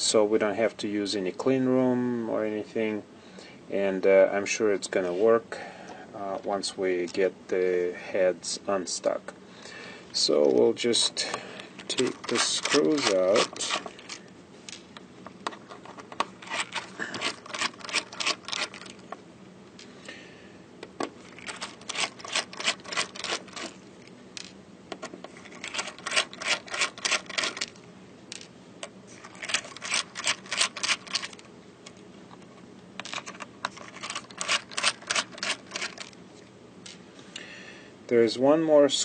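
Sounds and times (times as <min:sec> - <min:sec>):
screwdriver rapid clicking: 0:21.3 - 0:23.8, 0:25.5 - 0:27.7, 0:29.2 - 0:31.4, 0:33.8 - 0:36.1.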